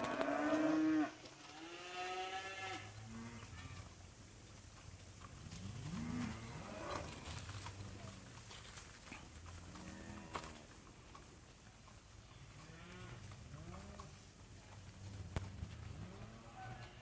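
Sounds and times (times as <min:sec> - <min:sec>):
cattle mooing: 0:00.0 - 0:03.8, 0:05.7 - 0:07.3.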